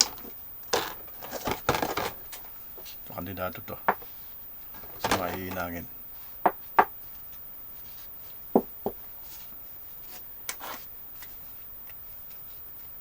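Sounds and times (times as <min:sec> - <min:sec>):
battery cells rattling: 0:00.0 - 0:02.9, 0:04.6 - 0:05.9
battery cells clicking and knocking: 0:00.0 - 0:07.5.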